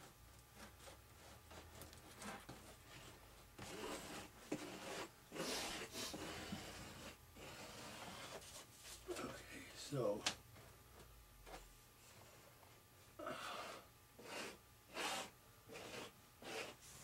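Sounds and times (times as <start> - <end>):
scraper spreading epoxy: 3.6 - 8.5, 14.2 - 16.8.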